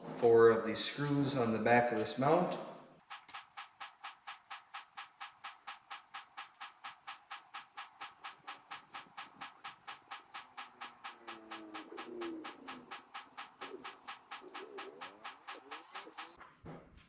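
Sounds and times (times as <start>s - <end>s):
light evenly spaced clicks: 3.0s - 16.4s.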